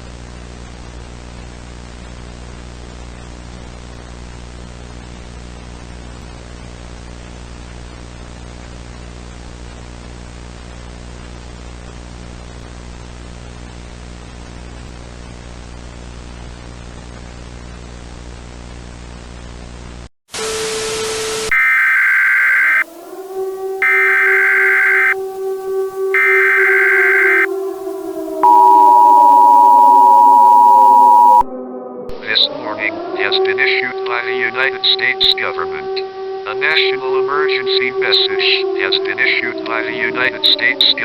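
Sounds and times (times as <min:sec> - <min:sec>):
burst of static with low tone: 0:00.0 - 0:20.1, 0:21.4 - 0:31.4
static hiss: 0:20.4 - 0:28.6
shrill emergency alert tones: 0:21.5 - 0:22.9, 0:23.8 - 0:25.2, 0:26.0 - 0:31.5.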